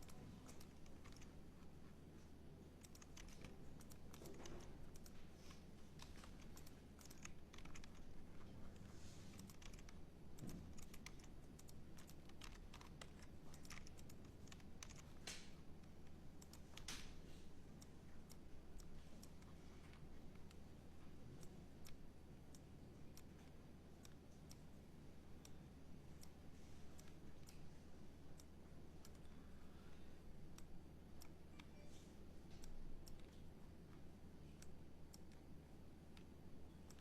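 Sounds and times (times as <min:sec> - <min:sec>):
typing on keyboard: 0:00.0 - 0:20.6, 0:32.5 - 0:34.0, 0:36.1 - 0:37.0
low steady hum: 0:00.0 - 0:37.0.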